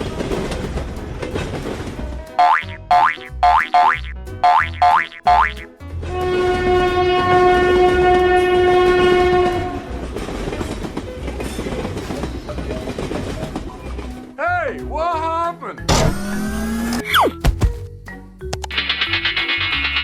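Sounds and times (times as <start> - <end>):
train rumble and clatter: 0.0 - 2.4, 5.8 - 14.4
train horn long note: 6.0 - 10.0.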